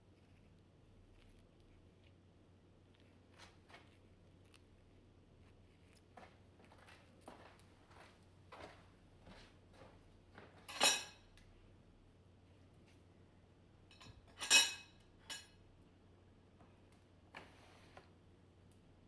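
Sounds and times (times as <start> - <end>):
kitchenware clinking: 10.5 - 11.3, 13.9 - 15.6.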